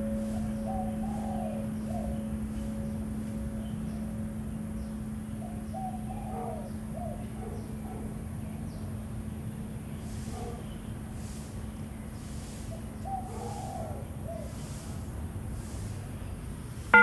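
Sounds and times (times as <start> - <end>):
steady low hum: 0.0 - 7.1
birds calling: 0.0 - 8.9, 12.2 - 14.8.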